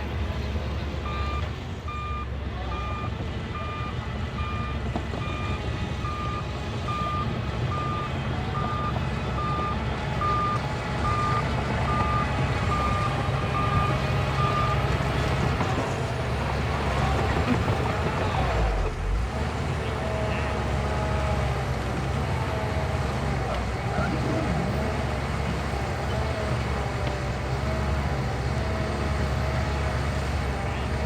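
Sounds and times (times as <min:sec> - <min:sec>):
diesel engine rumble: 0:00.0 - 0:31.0
reversing alarm beeping: 0:01.0 - 0:15.6.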